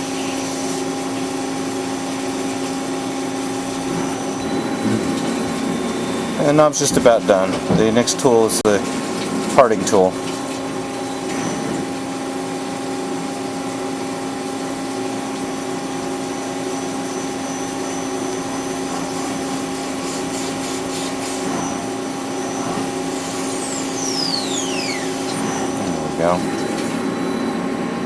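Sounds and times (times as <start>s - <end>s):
lathe machine hum: 0.0s - 28.0s
falling whine: 2.9s - 7.8s, 20.8s - 28.0s.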